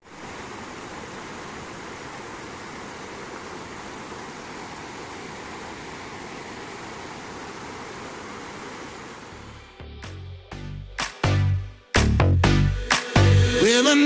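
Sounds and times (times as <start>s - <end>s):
stream water rushing: 0.1s - 9.6s.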